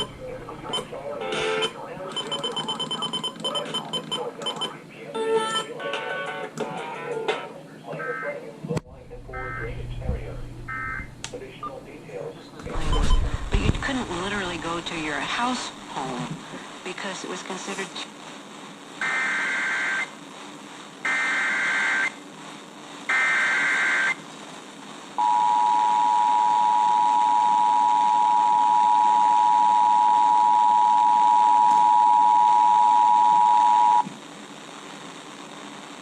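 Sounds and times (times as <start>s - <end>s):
faint radio hiss: 0.0s - 36.0s.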